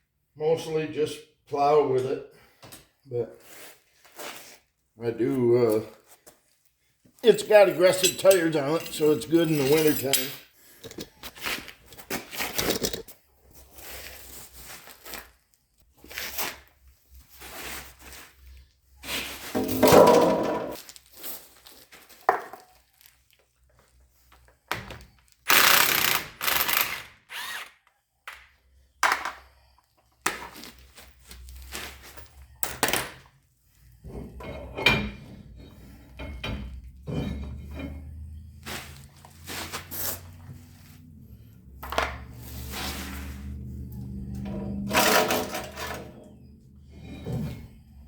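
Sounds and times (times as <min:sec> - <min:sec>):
power tool bursts: 0:25.5 - 0:27.8.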